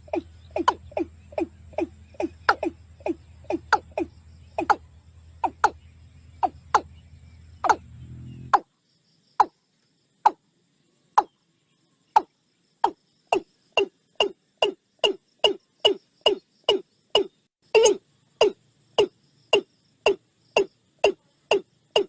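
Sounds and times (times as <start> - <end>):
animal calls dropping in pitch: 0.0 - 4.8, 5.4 - 5.8, 7.6 - 7.8.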